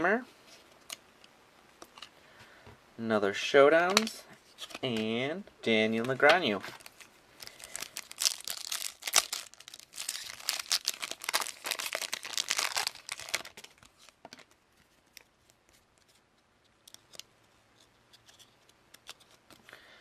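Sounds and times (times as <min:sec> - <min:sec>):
wrapper tearing and crinkling: 0:06.8 - 0:15.6.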